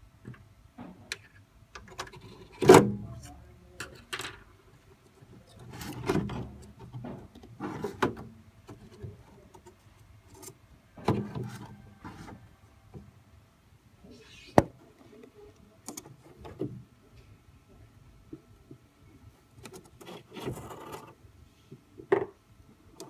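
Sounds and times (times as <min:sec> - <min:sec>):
panels knocking and scraping: 0:05.3 - 0:09.7, 0:10.3 - 0:12.4.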